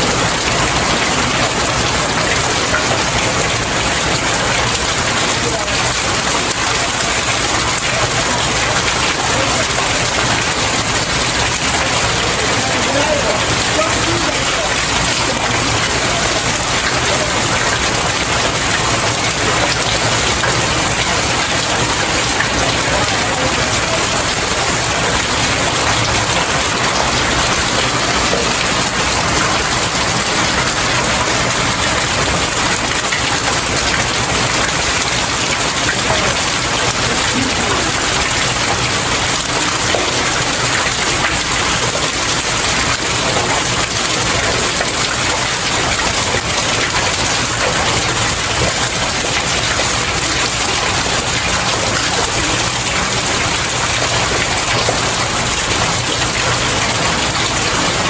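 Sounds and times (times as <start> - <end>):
heavy rain on stairs: 0.0 - 58.0.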